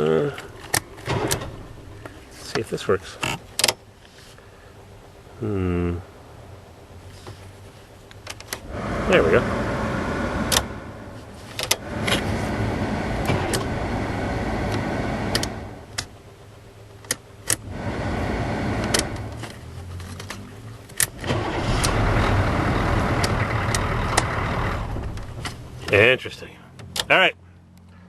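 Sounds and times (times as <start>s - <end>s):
engine starter cranking: 0.7s - 1.7s, 11.6s - 15.8s, 21.0s - 25.7s.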